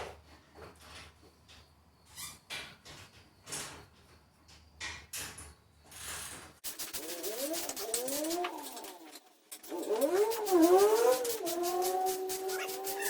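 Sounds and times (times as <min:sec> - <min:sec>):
animal yowls: 0:12.3 - 0:13.0.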